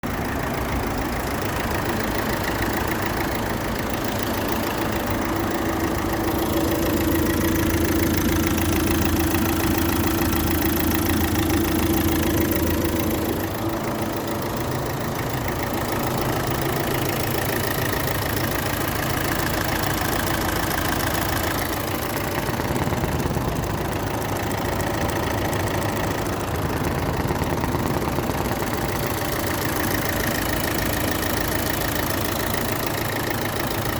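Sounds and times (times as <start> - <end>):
diesel engine idling: 0.0 - 33.9
fast even clicking: 0.0 - 33.9
stronger hum: 21.4 - 30.0.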